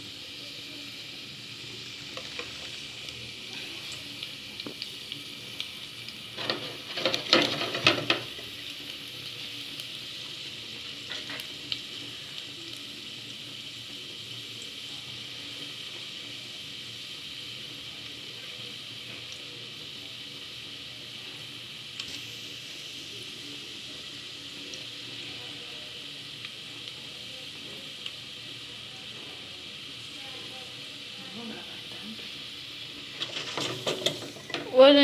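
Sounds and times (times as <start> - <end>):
garlic sizzling in oil: 0.0 - 35.0
stirring knocks and scrapes in pan: 6.4 - 8.7, 11.1 - 11.5, 33.0 - 34.8.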